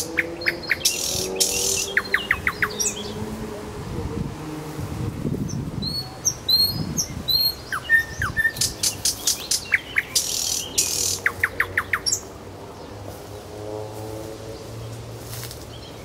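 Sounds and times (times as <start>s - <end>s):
nightingale singing: 0.0s - 3.3s, 5.5s - 12.4s.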